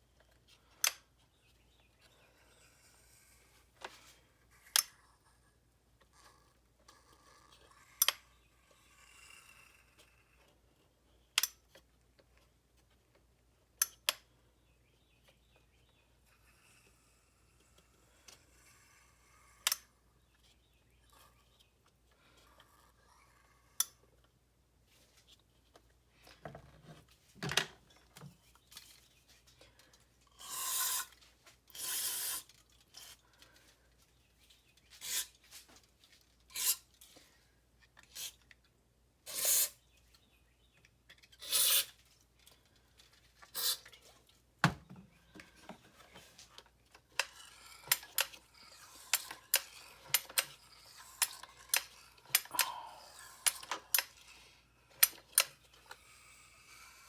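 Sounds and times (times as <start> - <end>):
hard parts clicking: 45.4 - 56.0.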